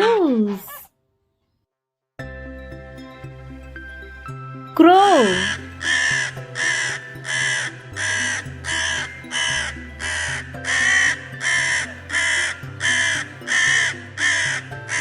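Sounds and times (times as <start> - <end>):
crow cawing: 5.2 - 15.0.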